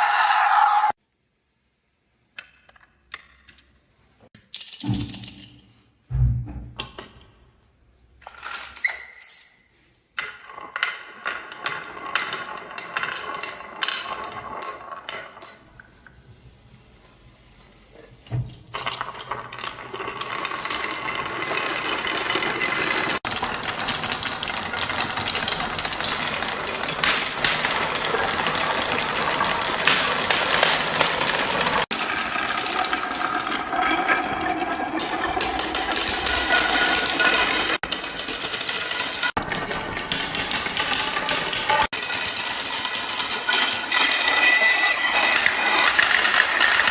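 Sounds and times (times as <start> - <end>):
thump: 6.1 - 6.8
marbles rolling and clacking: 10.2 - 16.2, 18.5 - 46.9.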